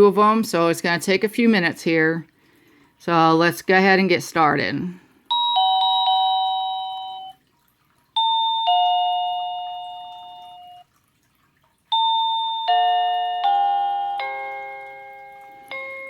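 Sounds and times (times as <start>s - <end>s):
doorbell chime tune: 5.3s - 7.4s, 8.1s - 10.9s, 11.9s - 16.0s
doorbell ding-dong chime: 5.3s - 7.4s, 8.2s - 10.9s, 11.9s - 16.0s.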